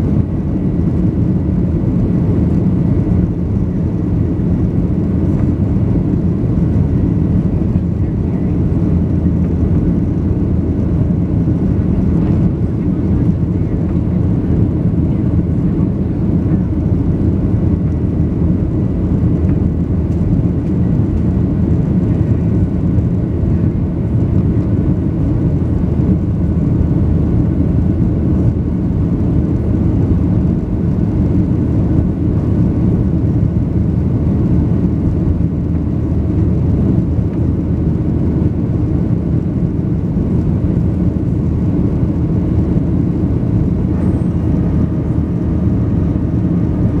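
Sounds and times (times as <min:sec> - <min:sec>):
jet engines rumbling: 0:00.0 - 0:47.0
faint thin whine: 0:43.8 - 0:45.4.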